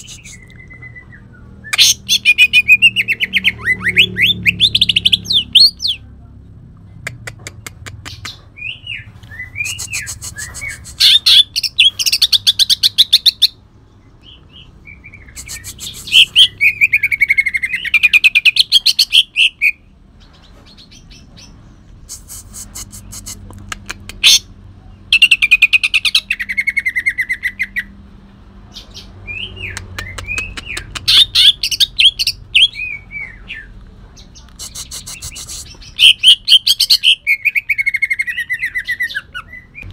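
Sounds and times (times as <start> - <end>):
bird singing in rough bursts: 8.2 - 21.6.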